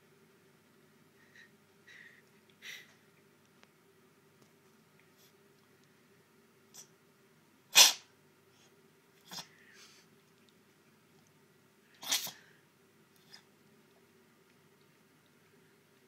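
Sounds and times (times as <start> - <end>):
cat sneezing: 7.7 - 8.1, 9.2 - 9.5, 12.0 - 12.5.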